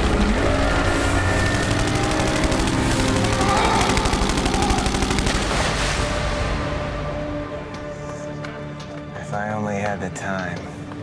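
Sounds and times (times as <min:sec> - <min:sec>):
rapid automatic gunfire: 0:00.0 - 0:06.0.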